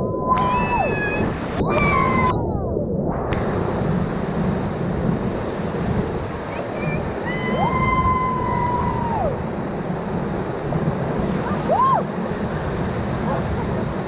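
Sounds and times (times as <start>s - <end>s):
high-pitched whoop: 0.0s - 2.7s, 7.2s - 9.4s, 11.6s - 12.1s
river rapids rushing: 3.3s - 14.0s.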